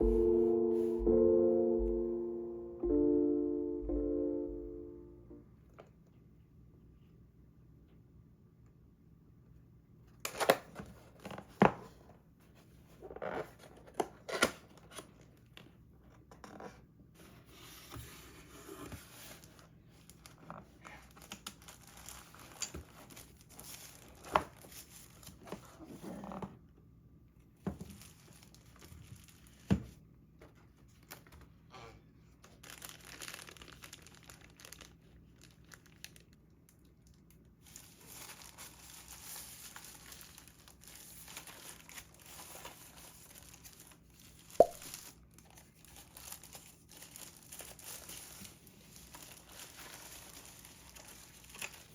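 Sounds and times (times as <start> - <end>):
paper and plastic crinkling: 18.9 - 25.8, 27.8 - 29.7, 32.4 - 51.9.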